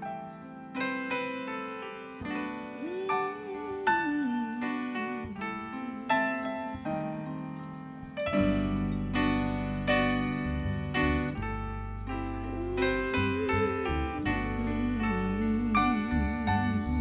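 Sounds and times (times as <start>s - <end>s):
keyboard chords: 0.7s - 17.0s
bass guitar: 8.0s - 17.0s.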